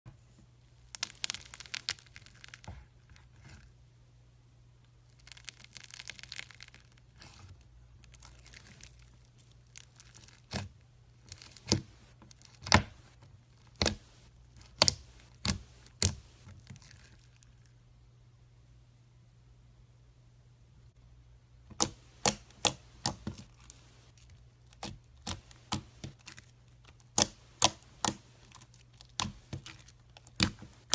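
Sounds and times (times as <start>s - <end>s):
slime squished by hand: 21.7s - 30.9s.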